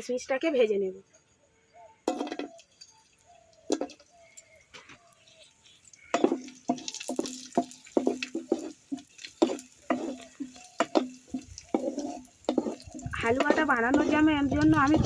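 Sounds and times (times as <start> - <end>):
spatula knocking and scraping pan: 2.1 - 2.6, 3.7 - 4.1, 6.1 - 15.0
nuts frying in fat: 2.1 - 15.0.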